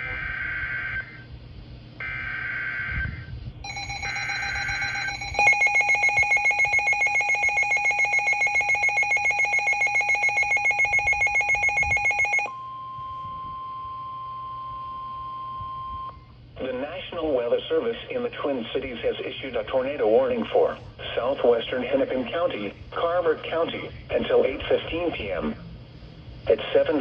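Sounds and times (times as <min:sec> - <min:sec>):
warbling digital data noise: 0:02.0 - 0:12.5
steady single-pitch tone: 0:03.6 - 0:16.3.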